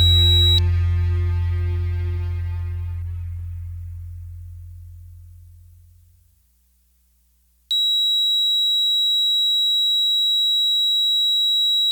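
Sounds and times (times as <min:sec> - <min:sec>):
piezo buzzer steady tone: 0:00.0 - 0:00.6, 0:07.7 - 0:11.9
background music: 0:00.0 - 0:05.5.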